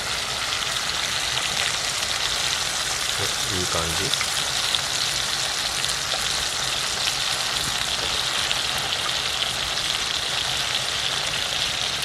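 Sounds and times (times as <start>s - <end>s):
meat sizzling on griddle: 0.0s - 12.0s.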